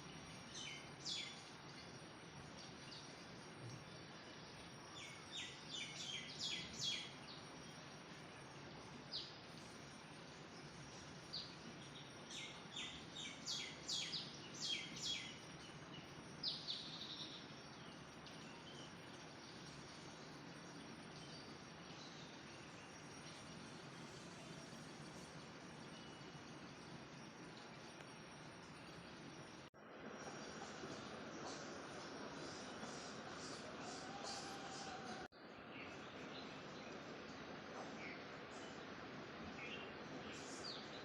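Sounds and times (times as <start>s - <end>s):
faint background hiss: 0.0s - 41.0s.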